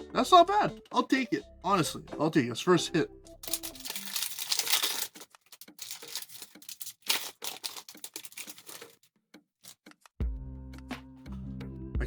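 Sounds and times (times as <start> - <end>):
cards crackling and clicking: 3.4 - 10.2
foil wrapper tearing and crinkling: 3.5 - 9.0.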